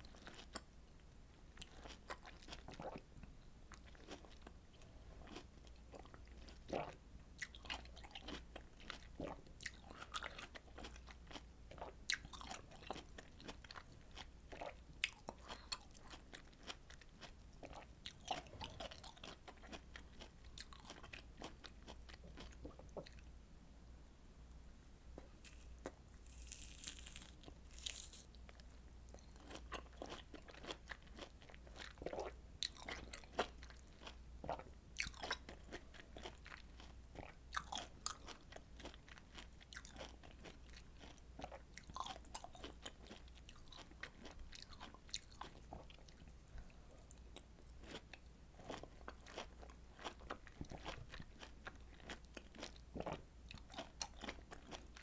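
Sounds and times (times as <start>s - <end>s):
soft hiss: 24.0s - 28.8s
wet bites and chewing: 25.4s - 28.3s.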